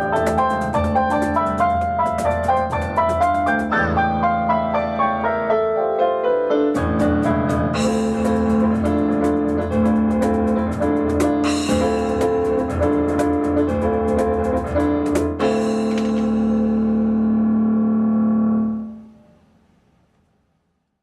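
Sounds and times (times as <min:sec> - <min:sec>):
percussion hits: 0:00.0 - 0:04.1, 0:06.8 - 0:17.4
piano playing: 0:00.0 - 0:19.8.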